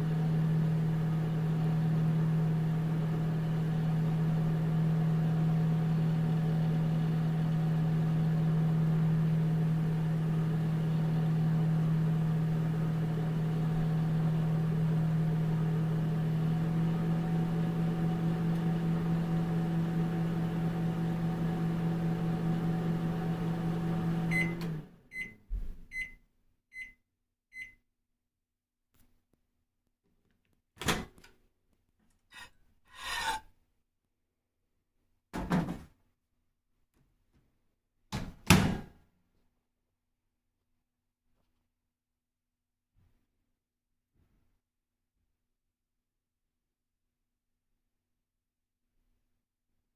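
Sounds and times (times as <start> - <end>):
microwave oven humming: 0.0 - 26.2
microwave beeps: 24.2 - 27.8.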